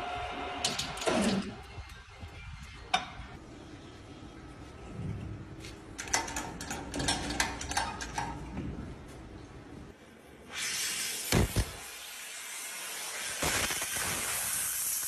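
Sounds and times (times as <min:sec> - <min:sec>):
loud steady hiss: 0:10.6 - 0:15.0.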